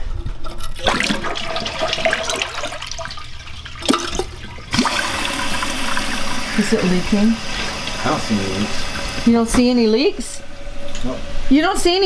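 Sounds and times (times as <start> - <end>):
toilet flushing: 0.7 - 12.0.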